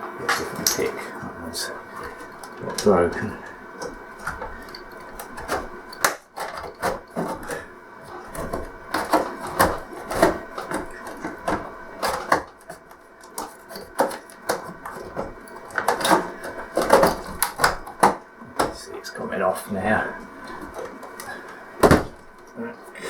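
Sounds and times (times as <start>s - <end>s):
plastic clips snapping: 2.0s - 7.6s.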